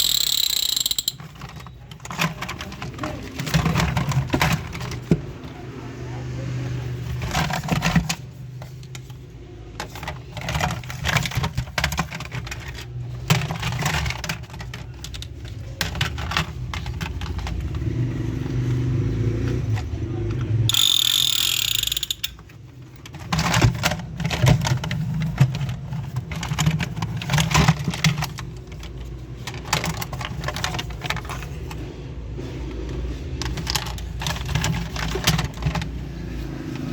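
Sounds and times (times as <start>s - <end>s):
toy gun parts clicking and rattling: 0.0s - 5.1s, 8.8s - 18.1s, 20.4s - 31.7s.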